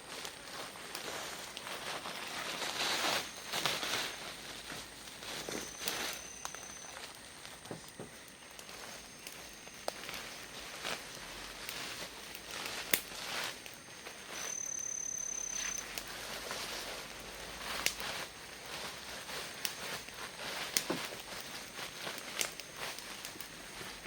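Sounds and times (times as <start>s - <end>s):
rustling on forest floor: 0.0s - 24.0s
footsteps on forest floor: 0.2s - 9.0s
high thin whistle: 5.3s - 7.0s, 14.0s - 16.0s.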